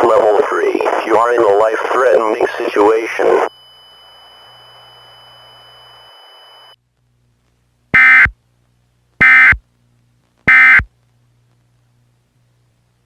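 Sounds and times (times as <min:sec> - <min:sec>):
alert data tone bursts: 0:08.0 - 0:08.3, 0:10.5 - 0:10.8.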